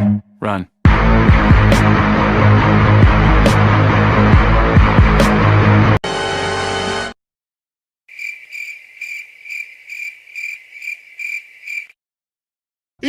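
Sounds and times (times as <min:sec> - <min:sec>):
cricket chirping: 0:08.1 - 0:12.0.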